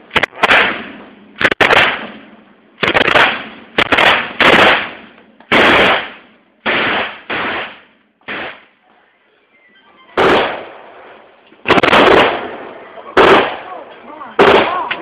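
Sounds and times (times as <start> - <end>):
gunshots with echo: 0.1 - 2.2, 2.8 - 8.7, 10.2 - 10.9, 11.7 - 13.8, 14.4 - 15.0.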